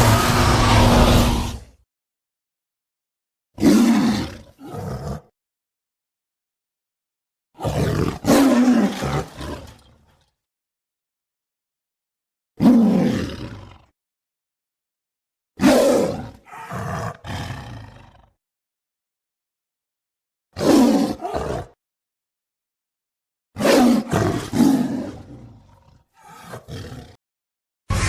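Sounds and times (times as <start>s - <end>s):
dinosaur roars: 0.0s - 1.7s, 3.6s - 5.3s, 7.6s - 10.2s, 12.6s - 13.9s, 15.6s - 18.4s, 20.6s - 21.8s, 23.6s - 27.2s.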